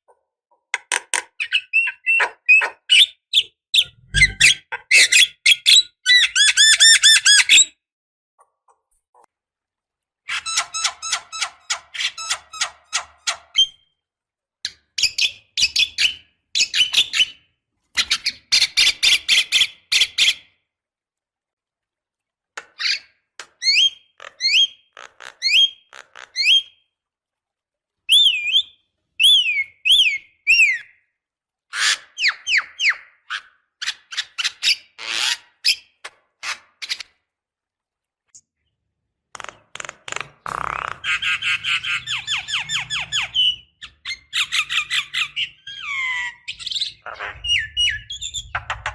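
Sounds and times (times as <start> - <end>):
bird whistling: 46.5 - 48.7.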